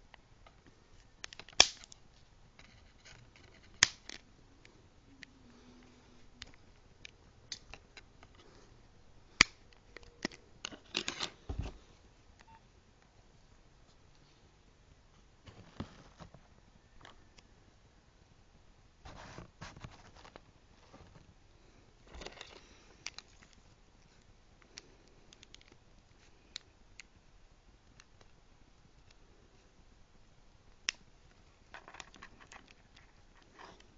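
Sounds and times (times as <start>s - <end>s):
faint clicks of small parts: 22.0s - 27.2s, 27.8s - 29.3s, 30.7s - 33.9s.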